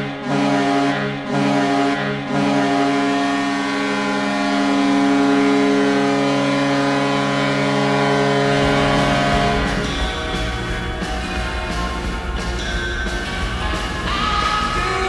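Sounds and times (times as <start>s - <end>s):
arena goal horn blasts: 0.0s - 12.1s, 13.0s - 15.0s
music: 8.5s - 15.0s.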